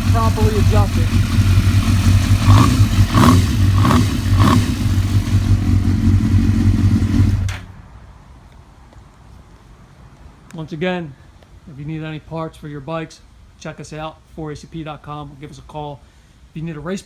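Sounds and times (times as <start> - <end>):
motorcycle engine idling and revving: 0.0 - 7.8.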